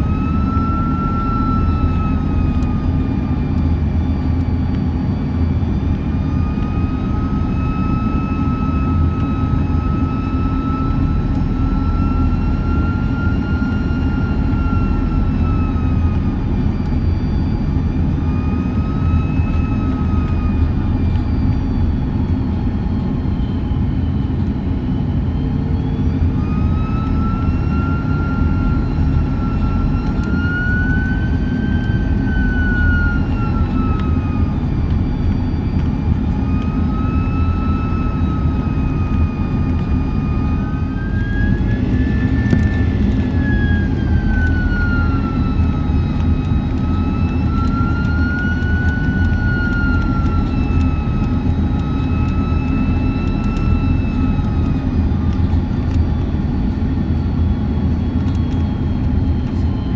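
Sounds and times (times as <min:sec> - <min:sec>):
engine and airflow rumble: 0:00.0 - 0:59.9
jet engine whine: 0:00.0 - 0:59.9.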